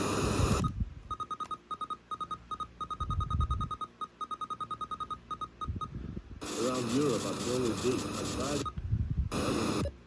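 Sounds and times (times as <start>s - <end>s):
rapid short high beeps: 0.6s - 8.8s.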